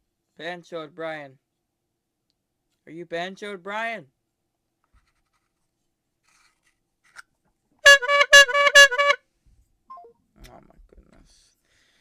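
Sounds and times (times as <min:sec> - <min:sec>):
bike horn honking: 0:07.9 - 0:09.2.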